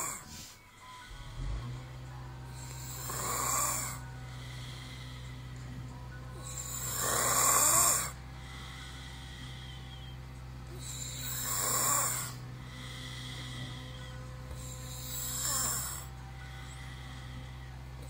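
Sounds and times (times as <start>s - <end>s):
man snoring loudly: 0.0s - 0.4s, 1.0s - 10.1s, 10.7s - 18.0s.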